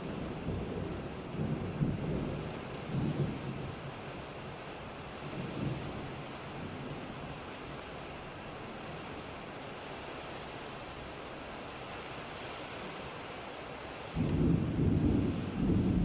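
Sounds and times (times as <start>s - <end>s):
low rumble of thunder: 0.0s - 7.3s, 14.2s - 16.0s
rain hissing: 4.4s - 16.0s.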